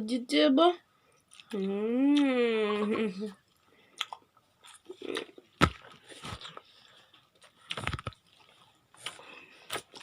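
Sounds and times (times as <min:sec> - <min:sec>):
child chewing and crunching: 0:01.1 - 0:10.0.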